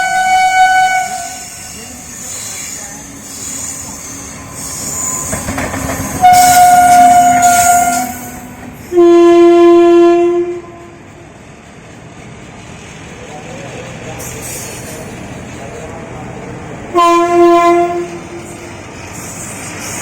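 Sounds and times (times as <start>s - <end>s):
locomotive horn blasts: 0.0s - 1.5s, 6.2s - 10.8s, 16.9s - 18.2s
rumble and clatter of train: 0.0s - 20.0s.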